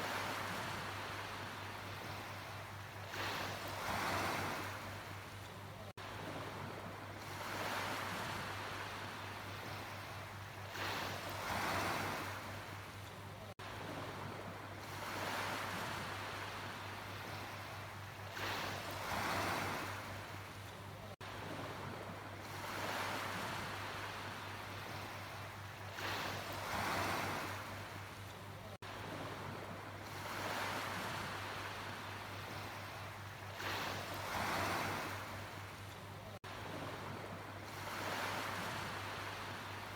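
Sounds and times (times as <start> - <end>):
sea waves washing in: 21.2 - 35.7, 36.3 - 39.9.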